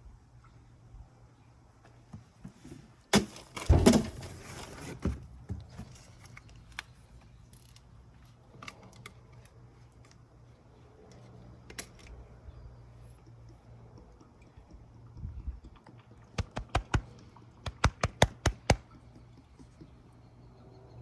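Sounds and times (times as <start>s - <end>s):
light clicks and taps: 5.9s - 20.4s.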